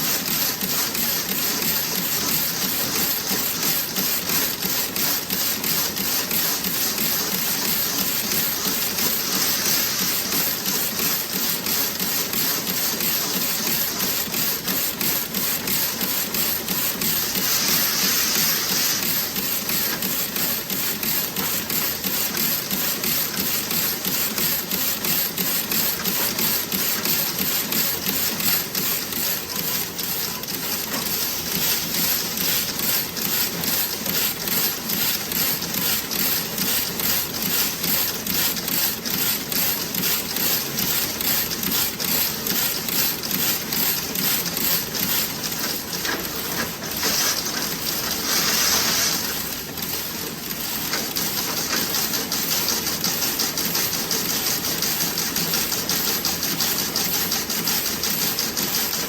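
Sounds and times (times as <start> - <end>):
knitting machine clatter: 0.0 - 59.0
steady hiss: 17.2 - 19.4.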